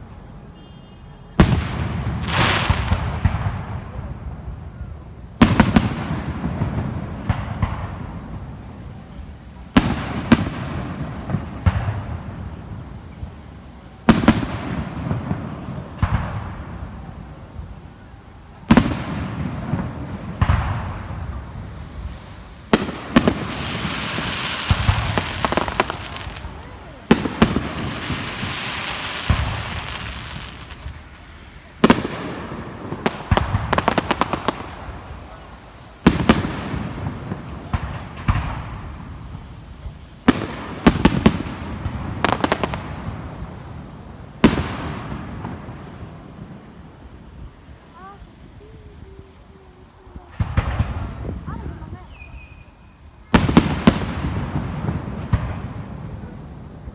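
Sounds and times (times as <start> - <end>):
dense firework crackling: 0.0 - 56.9
firework shells bursting with bangs: 18.6 - 46.6.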